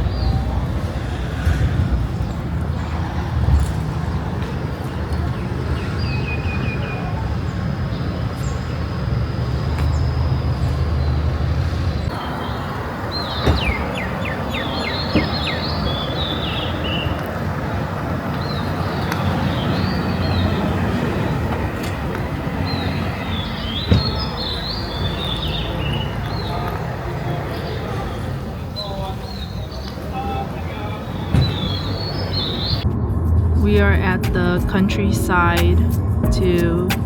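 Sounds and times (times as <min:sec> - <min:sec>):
small birds chirping: 0:01.5 - 0:21.4, 0:22.6 - 0:26.8, 0:28.8 - 0:32.9
steady low rumble: 0:32.8 - 0:37.0.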